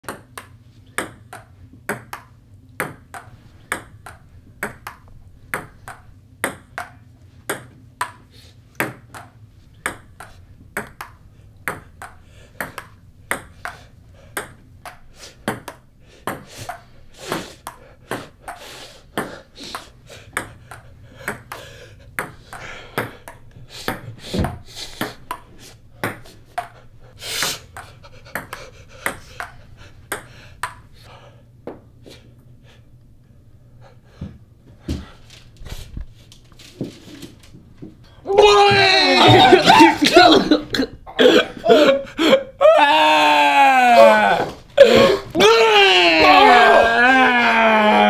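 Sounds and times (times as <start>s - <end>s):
ball bouncing on table: 0.1s - 6.9s, 8.8s - 13.8s
table tennis ball hitting paddles: 0.1s - 21.6s, 22.2s - 26.8s, 27.4s - 30.9s.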